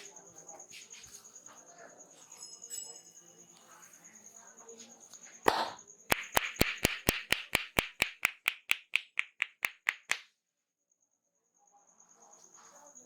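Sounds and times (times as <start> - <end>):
hands clapping rapidly: 5.5 - 10.3.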